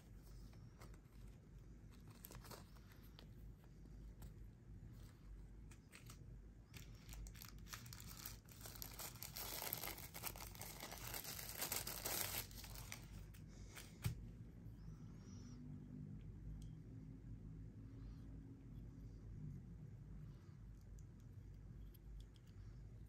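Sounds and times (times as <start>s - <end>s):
plastic packaging crinkling: 6.8s - 13.3s.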